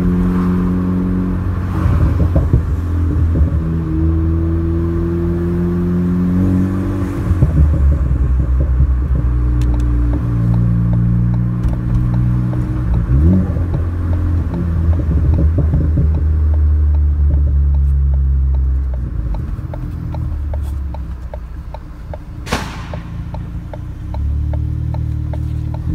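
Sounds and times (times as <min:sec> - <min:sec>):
car engine and exhaust drone: 0:00.0 - 0:25.9
faint rapid ticking: 0:09.6 - 0:25.9
sharp exhaust pop: 0:22.2 - 0:24.7.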